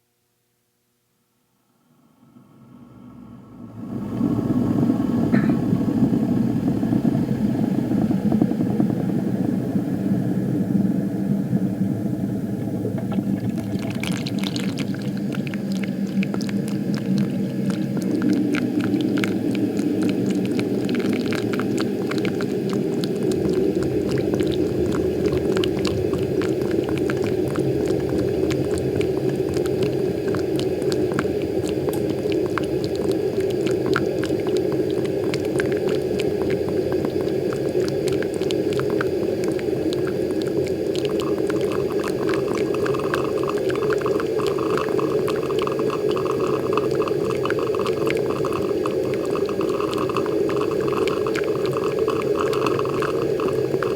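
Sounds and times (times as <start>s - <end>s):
higher gurgle: 3.8s - 9.1s, 12.0s - 53.9s
coffee maker bubbling and popping: 3.8s - 53.9s
water sputtering onto coffee grounds: 12.5s - 53.9s.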